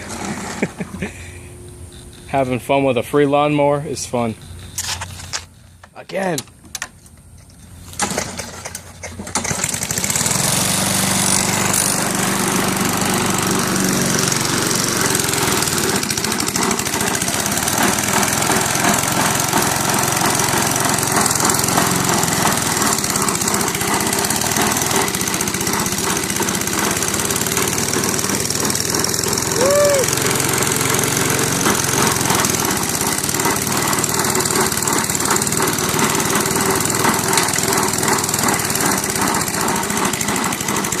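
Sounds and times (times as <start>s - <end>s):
lawnmower engine with rattling knock: 0.0s - 41.0s
man talking: 2.3s - 4.4s, 6.0s - 6.5s.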